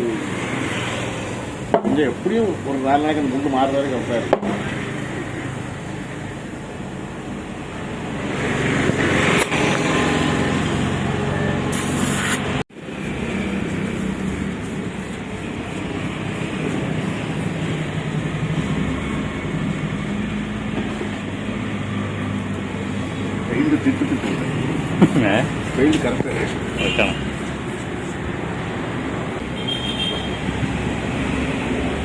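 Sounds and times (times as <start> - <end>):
short hiss of air: 11.7 - 12.6
machinery running with low hum: 12.8 - 22.1, 22.8 - 29.2.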